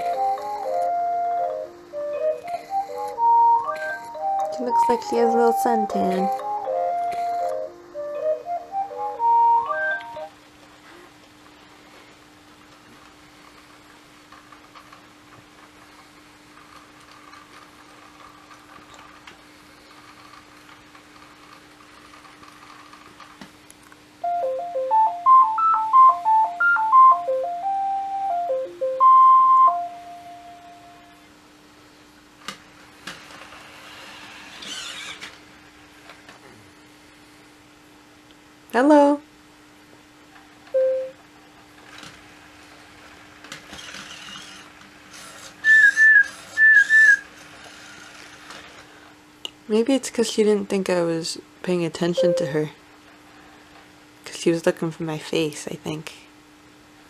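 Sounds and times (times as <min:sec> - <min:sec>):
electronic beeping melody: 0:00.0 - 0:10.3, 0:24.2 - 0:31.2, 0:40.8 - 0:41.2, 0:52.2 - 0:52.7
robot dog motors whirring: 0:33.0 - 0:35.4, 0:43.4 - 0:48.9
short electronic chirps: 0:52.2 - 0:52.6.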